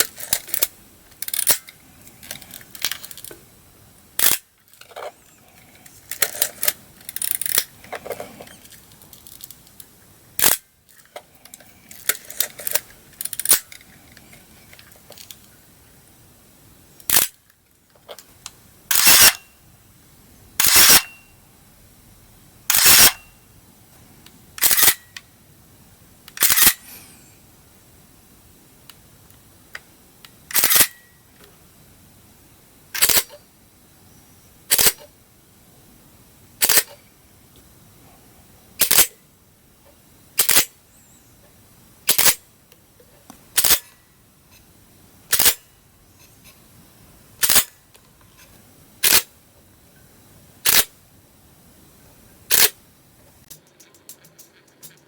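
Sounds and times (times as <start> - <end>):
camera shutter clack: 17.1 - 17.4, 18.9 - 19.4, 20.6 - 21.2, 22.7 - 23.2, 24.6 - 25.2, 26.4 - 26.8, 30.5 - 31.0, 36.6 - 36.9, 43.6 - 43.8, 47.4 - 47.7, 50.6 - 50.9, 52.5 - 52.8.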